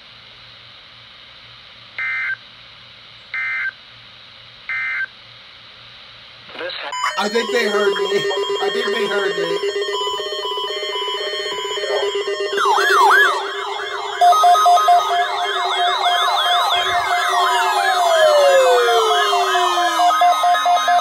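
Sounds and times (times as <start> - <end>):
harsh buzzing alarm tone: 6.9 - 21.0
pulsing beep: 6.9 - 21.0
rapid yelping siren: 6.9 - 21.0
falling siren wail: 7.0 - 21.0.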